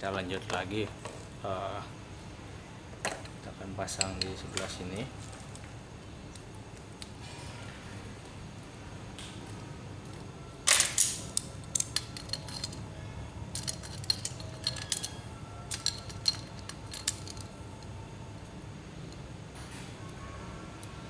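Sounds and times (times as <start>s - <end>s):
metal fittings clinking: 10.7s - 12.9s, 13.5s - 17.9s.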